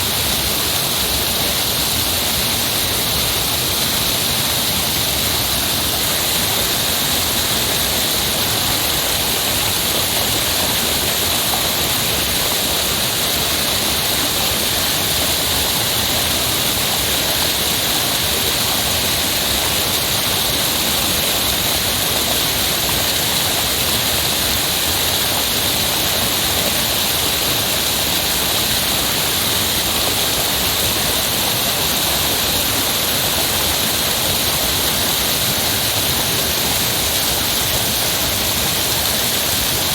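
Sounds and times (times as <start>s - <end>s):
heavy rushing water: 0.0s - 39.9s.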